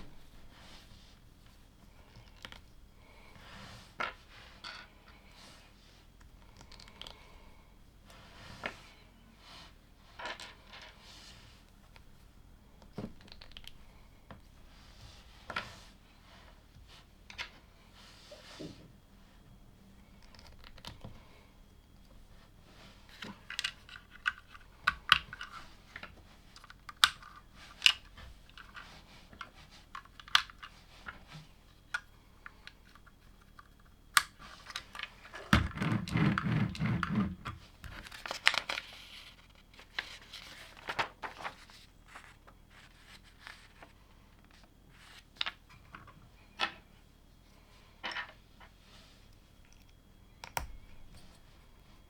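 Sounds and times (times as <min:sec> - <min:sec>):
rustling and rattling of pieces: 0:22.7 - 0:47.0.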